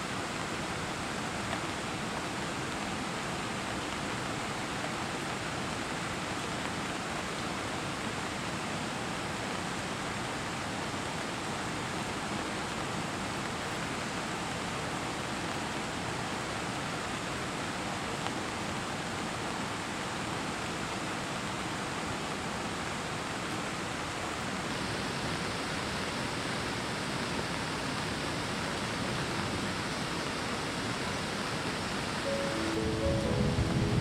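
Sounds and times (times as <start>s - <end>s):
heavy rain falling: 32.3s - 34.0s.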